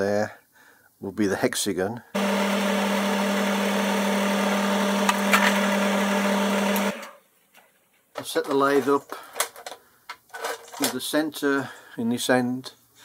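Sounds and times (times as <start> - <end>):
metal lathe motor humming: 2.2 - 7.1.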